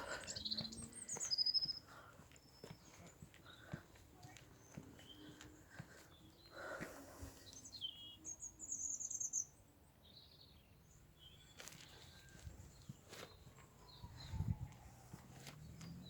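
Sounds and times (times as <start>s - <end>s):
high bird trill: 0.0s - 1.9s, 7.6s - 9.6s
small birds chirping: 0.0s - 16.0s.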